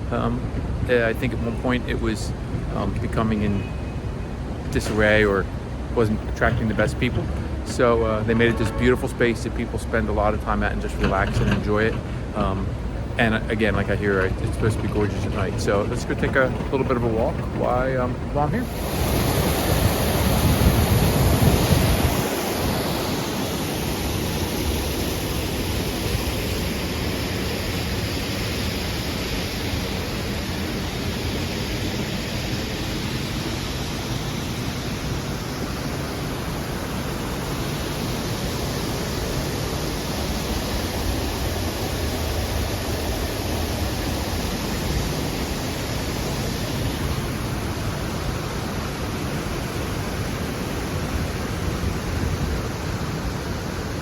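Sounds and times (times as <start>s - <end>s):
flowing water rushing: 0.0s - 54.0s
wind rumble on microphone: 13.6s - 24.1s.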